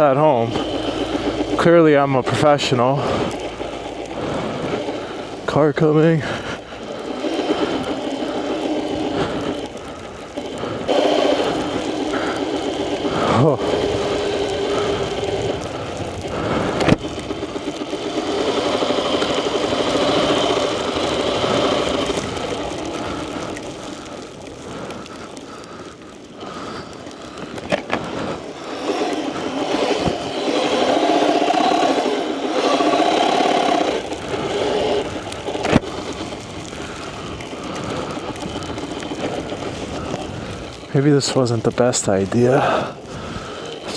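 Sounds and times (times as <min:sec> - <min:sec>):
electric dirt bike motor whining: 0:00.0 - 0:43.9.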